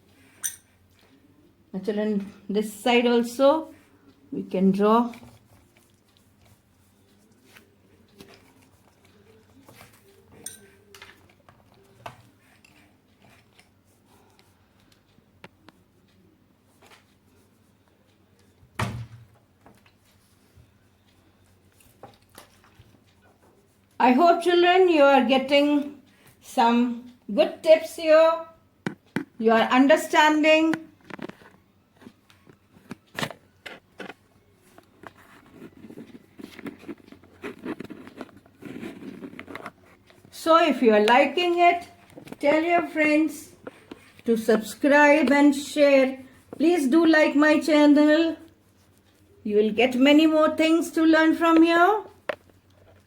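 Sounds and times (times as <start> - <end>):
clicks and taps of art materials: 28.8 - 29.4.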